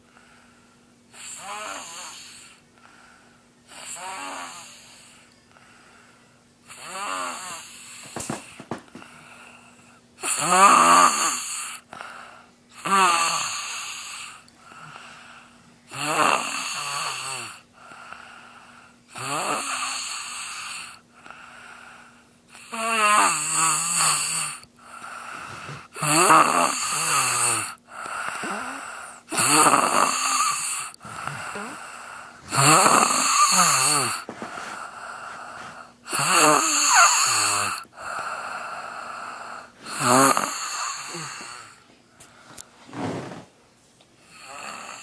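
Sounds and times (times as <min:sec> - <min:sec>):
boy snoring loudly: 0:01.2 - 0:02.6, 0:03.7 - 0:05.2, 0:06.7 - 0:08.6, 0:10.2 - 0:11.9, 0:12.8 - 0:15.1, 0:15.9 - 0:17.6, 0:19.1 - 0:21.0, 0:22.5 - 0:41.8, 0:44.3 - 0:45.0.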